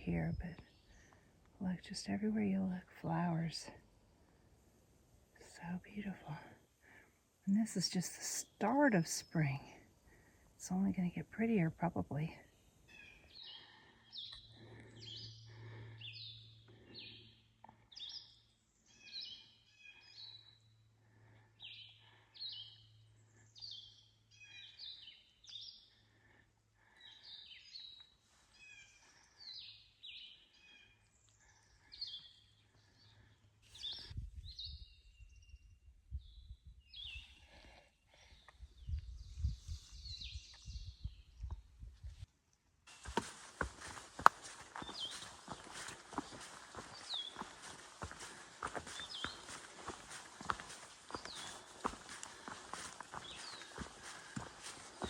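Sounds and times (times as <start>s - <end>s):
songbirds chirping: 0.0s - 42.2s, 42.9s - 55.0s
footsteps on trail: 42.9s - 55.0s.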